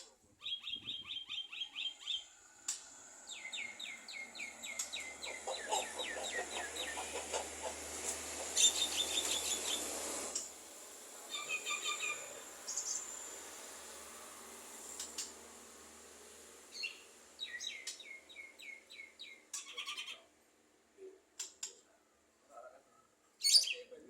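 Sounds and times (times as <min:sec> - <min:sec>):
bird chirping and whistling: 0:00.4 - 0:02.2, 0:08.6 - 0:09.9, 0:11.3 - 0:12.2, 0:23.4 - 0:23.8.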